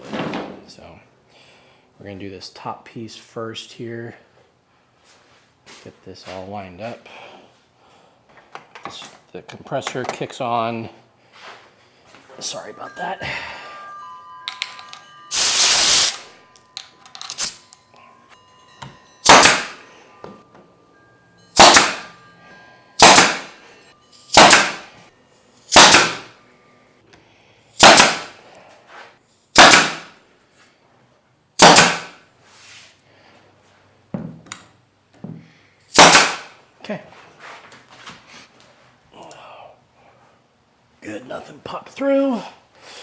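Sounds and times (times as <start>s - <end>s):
loud burst of noise: 15.3s - 16.2s
pneumatic stapler firing: 15.3s - 16.2s, 17.3s - 17.6s, 19.2s - 19.8s, 21.6s - 22.1s, 23.0s - 23.5s, 24.3s - 24.9s, 25.7s - 26.3s, 27.8s - 28.4s, 29.6s - 30.1s, 31.6s - 32.2s, 35.9s - 36.5s.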